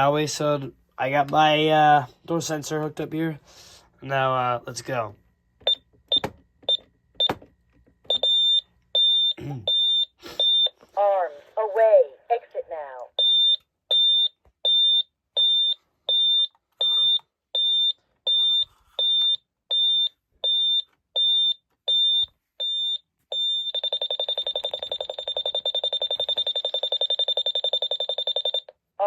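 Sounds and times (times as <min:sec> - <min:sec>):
alarm keypad beeping: 0:05.6 - 0:07.4, 0:08.1 - 0:10.8, 0:13.2 - 0:28.8.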